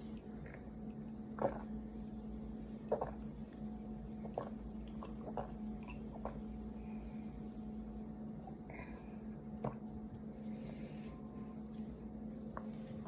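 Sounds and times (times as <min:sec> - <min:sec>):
person gulping a drink: 0:00.2 - 0:01.8, 0:02.8 - 0:03.5, 0:04.2 - 0:06.5.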